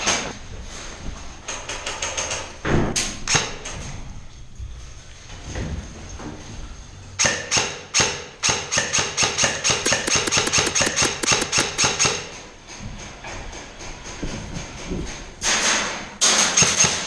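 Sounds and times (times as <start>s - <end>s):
airsoft gun shots: 9.8s - 11.9s.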